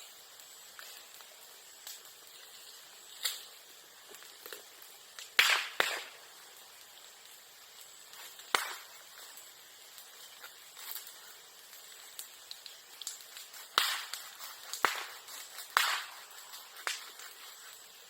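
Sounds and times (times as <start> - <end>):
bamboo popping in fire: 0.0 - 18.0
faint fire crackling: 0.0 - 18.0.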